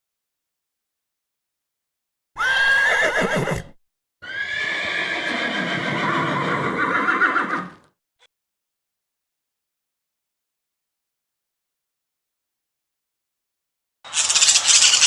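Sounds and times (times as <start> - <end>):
horse whinnying: 2.4 - 7.8.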